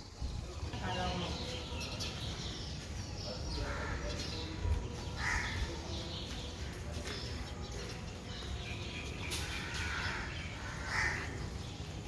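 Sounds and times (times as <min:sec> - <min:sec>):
birds chirping and calling: 0:00.0 - 0:12.0.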